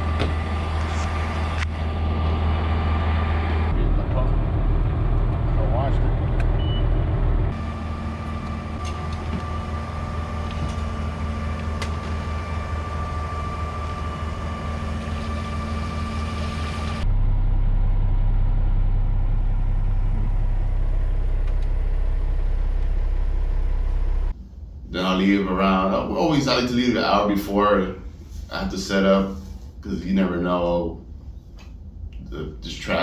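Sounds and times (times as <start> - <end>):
deep loud engine: 0.0 - 24.4
truck engine running: 0.0 - 24.4.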